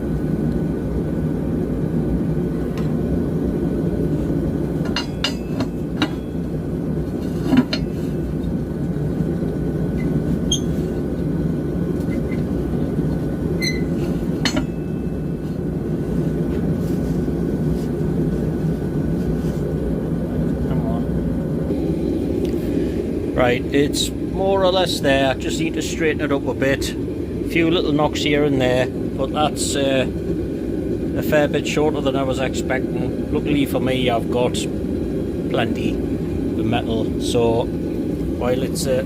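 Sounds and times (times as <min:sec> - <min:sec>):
steady low drone: 0:00.0 - 0:39.0.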